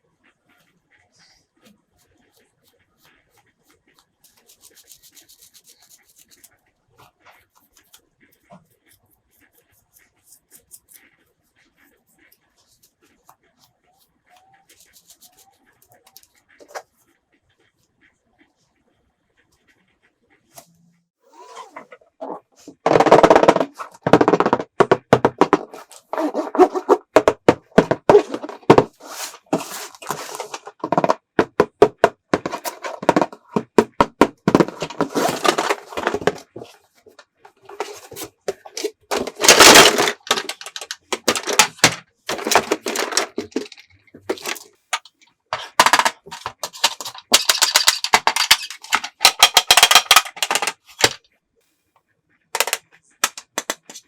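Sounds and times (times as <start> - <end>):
plastic toy pieces clicking: 37.5 - 51.2, 52.6 - 54.0.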